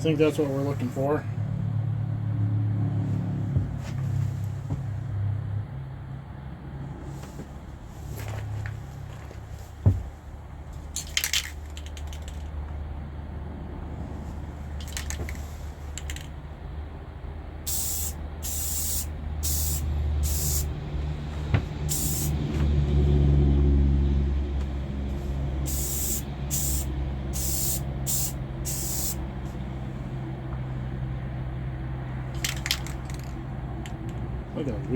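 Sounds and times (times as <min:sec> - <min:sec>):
steady low rumble: 0:02.9 - 0:34.9
spray paint can hissing: 0:17.7 - 0:20.7, 0:21.8 - 0:22.4, 0:25.6 - 0:29.2.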